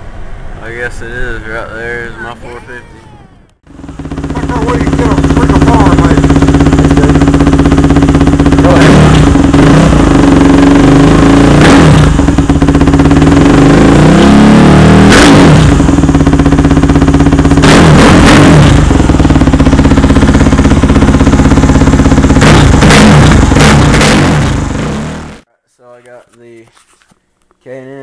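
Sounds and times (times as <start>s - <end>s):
quad engine revving: 3.7s - 25.5s.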